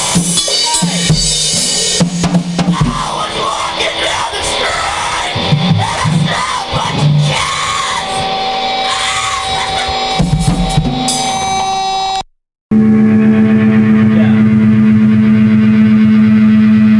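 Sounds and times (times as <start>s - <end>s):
heavy metal music with drums: 0.0s - 12.2s.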